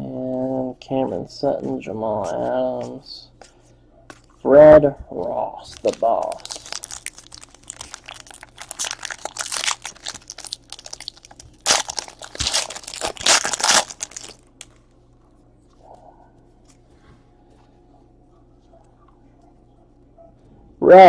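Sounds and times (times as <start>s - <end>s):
wrapper tearing and crinkling: 5.7s - 14.8s.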